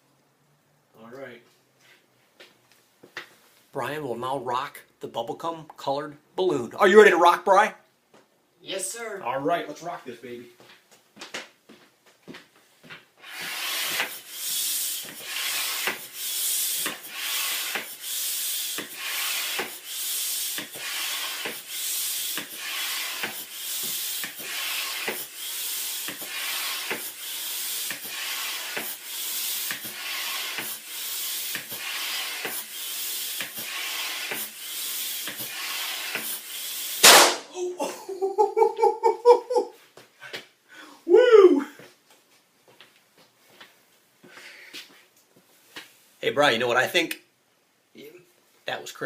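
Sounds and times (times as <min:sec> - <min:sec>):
hand air pump hissing: 0:13.2 - 0:37.2.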